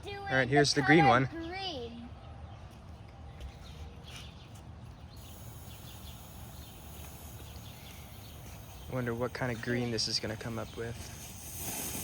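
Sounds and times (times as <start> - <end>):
faint bird chirps: 3.3 - 11.2
steady high hiss: 5.2 - 12.0.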